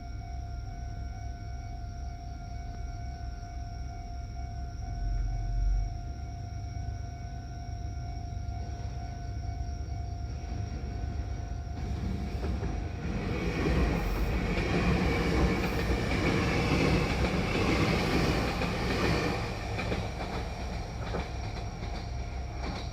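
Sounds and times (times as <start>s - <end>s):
crossing warning bell ringing: 0.0s - 22.9s
train wheels rumbling on rails: 7.9s - 22.9s
wheels clacking over rail joints: 11.8s - 22.9s.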